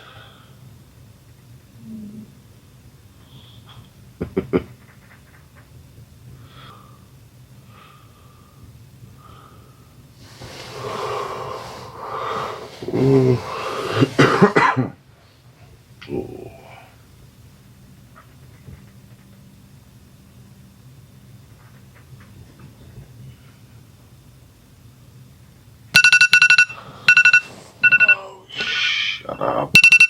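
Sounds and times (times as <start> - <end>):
heavy breathing: 9.2 - 14.2
person coughing: 14.0 - 15.0.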